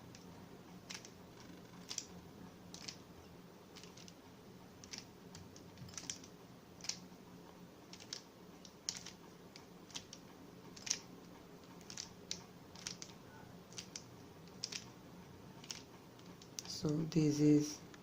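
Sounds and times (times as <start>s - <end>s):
puzzle cube layers clicking: 0.9s - 1.2s, 3.8s - 4.2s, 7.9s - 9.2s, 9.8s - 11.1s, 11.7s - 14.9s.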